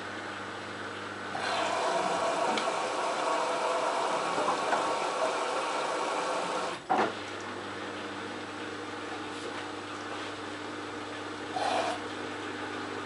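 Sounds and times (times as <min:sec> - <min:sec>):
washing machine drum and motor: 0:00.0 - 0:13.0
washing machine hum: 0:00.0 - 0:13.0.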